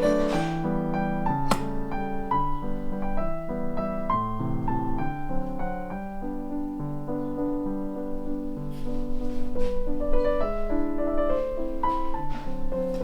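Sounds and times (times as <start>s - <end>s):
gentle piano music: 0.0s - 13.0s
sharp click: 1.4s - 2.0s.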